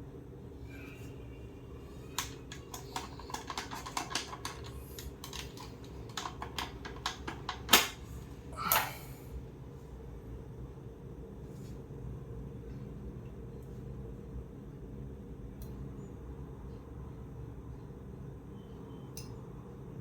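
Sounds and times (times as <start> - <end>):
plastic parts clicking: 2.1 - 8.0.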